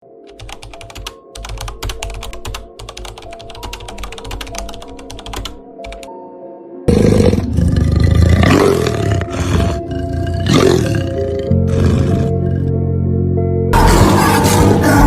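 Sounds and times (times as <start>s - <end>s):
soft music with held notes: 0.0s - 15.0s
computer keyboard typing: 0.2s - 6.1s.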